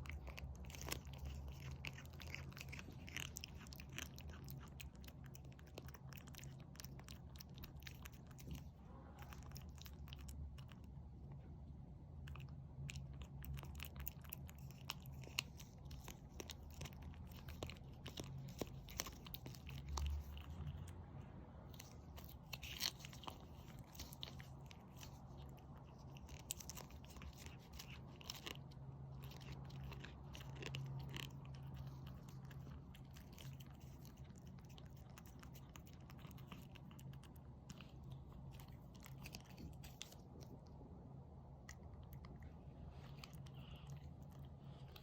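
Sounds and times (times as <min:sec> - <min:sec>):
cat licking and chewing: 0:00.0 - 0:45.0.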